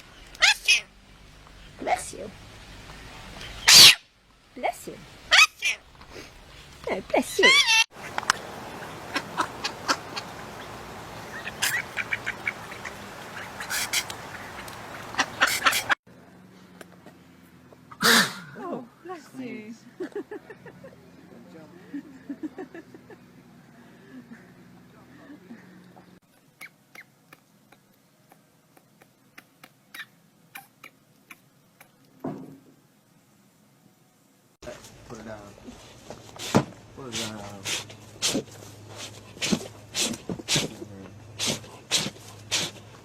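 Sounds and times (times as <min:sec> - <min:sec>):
animal sneezing: 0:13.5 - 0:14.3, 0:15.2 - 0:16.0, 0:17.9 - 0:18.6, 0:37.2 - 0:42.9.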